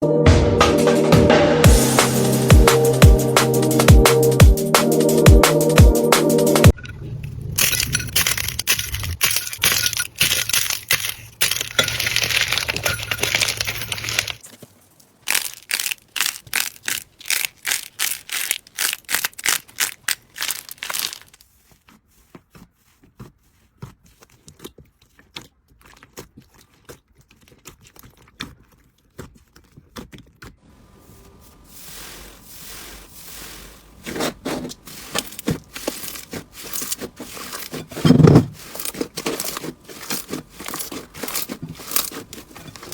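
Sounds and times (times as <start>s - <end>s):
slime clicking and popping: 15.3s - 21.2s.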